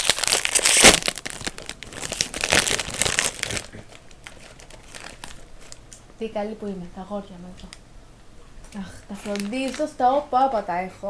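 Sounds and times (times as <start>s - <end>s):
plastic snack bag crinkling: 0.0s - 6.2s, 8.7s - 10.8s.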